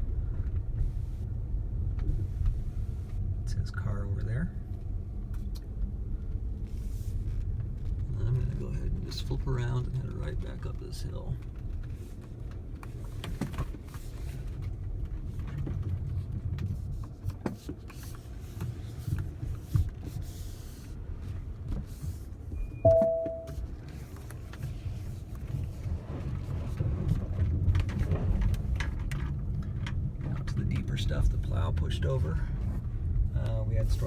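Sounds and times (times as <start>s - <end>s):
two-tone electronic chime: 22.8s - 23.6s.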